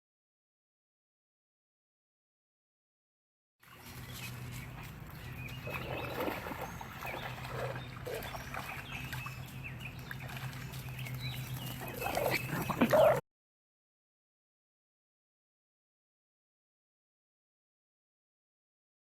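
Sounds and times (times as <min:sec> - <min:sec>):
steady low hum: 0:03.8 - 0:13.2
bird chirps: 0:04.0 - 0:13.2
dog sounds: 0:05.7 - 0:08.8, 0:11.6 - 0:13.2.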